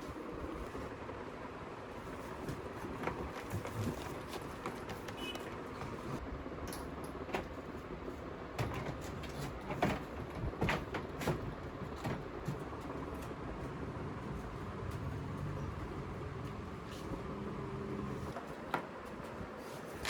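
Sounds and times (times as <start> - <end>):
workshop background noise: 0.0 - 20.0
knocks and clatter of handling: 2.1 - 7.8, 8.5 - 17.3.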